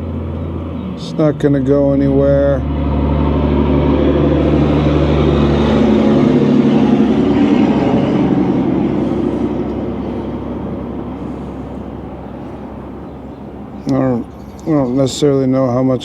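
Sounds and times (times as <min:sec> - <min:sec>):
motor vehicle passing by: 0:00.0 - 0:16.0.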